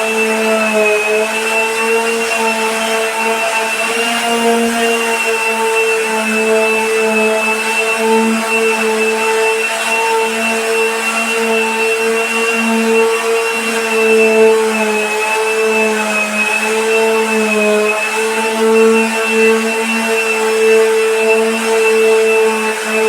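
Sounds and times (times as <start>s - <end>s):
electric sander motor whine: 0.0s - 23.0s.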